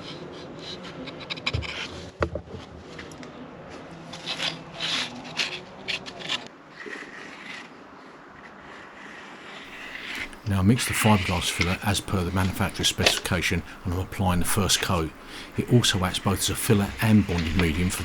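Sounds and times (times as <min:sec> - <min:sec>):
hand scraping and rubbing: 0:09.7 - 0:18.0.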